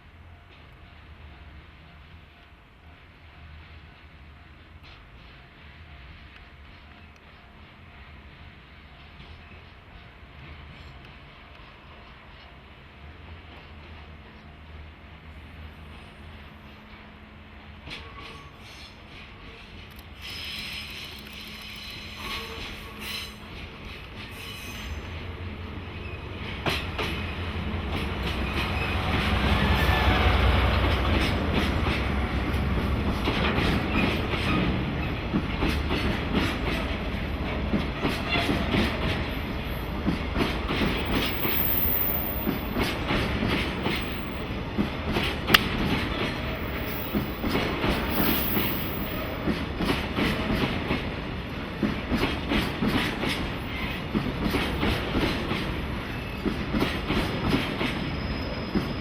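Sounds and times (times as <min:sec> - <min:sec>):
diesel locomotive engine rumble: 0:00.0 - 0:59.0
train wheels clacking over rail joints: 0:17.9 - 0:25.0, 0:30.6 - 0:39.4, 0:40.0 - 0:59.0.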